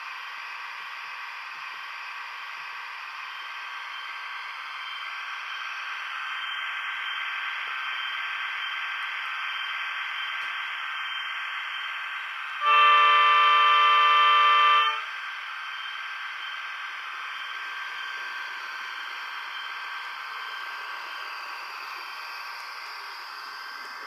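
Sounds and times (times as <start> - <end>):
diesel engine running: 0.0 - 24.0
loud horn blast: 12.6 - 15.1.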